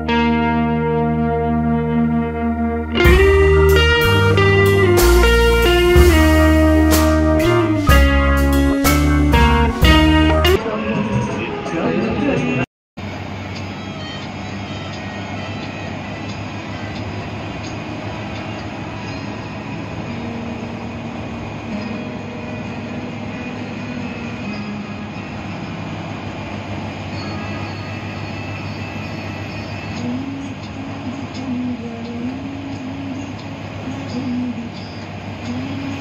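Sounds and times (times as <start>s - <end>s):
bus engine drone: 0.0s - 36.0s
road rumble: 0.0s - 36.0s.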